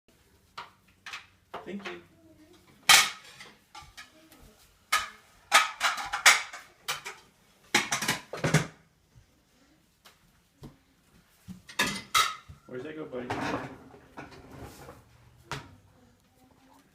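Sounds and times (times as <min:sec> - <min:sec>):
dishes and cutlery clattering: 0:02.8 - 0:04.2, 0:04.9 - 0:08.8, 0:11.5 - 0:12.6, 0:13.2 - 0:15.0.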